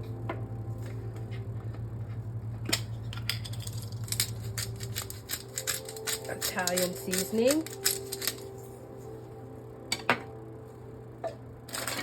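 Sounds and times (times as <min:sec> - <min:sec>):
steady low hum: 0:00.0 - 0:12.0
spice shaker rattling: 0:03.4 - 0:08.6.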